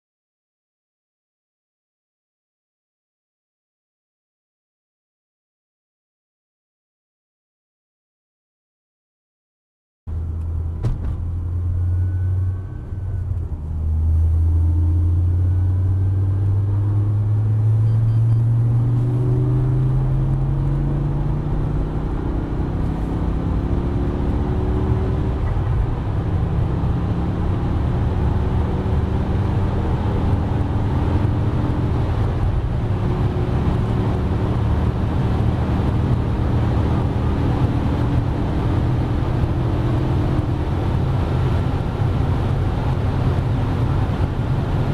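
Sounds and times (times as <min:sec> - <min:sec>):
car engine accelerating: 0:10.1 - 0:44.9
road noise: 0:10.1 - 0:44.9.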